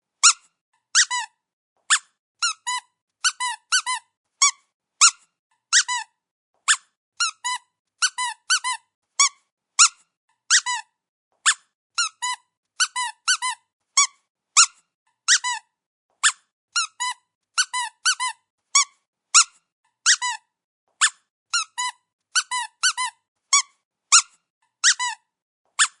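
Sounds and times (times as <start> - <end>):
rubber squeaky toy squeaking: 0.2 - 26.0.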